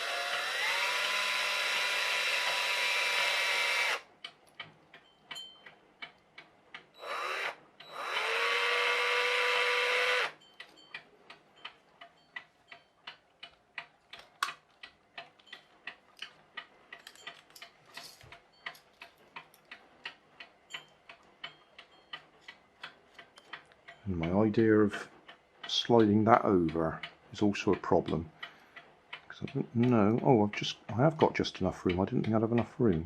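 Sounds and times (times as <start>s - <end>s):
electric drill spinning: 0.0s - 4.0s, 7.0s - 10.4s
clock ticking: 0.0s - 33.0s.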